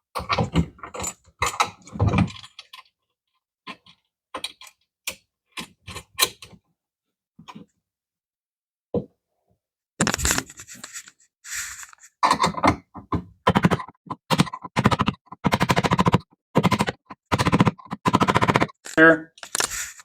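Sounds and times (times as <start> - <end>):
rapid clicking bursts: 13.5 - 19.0.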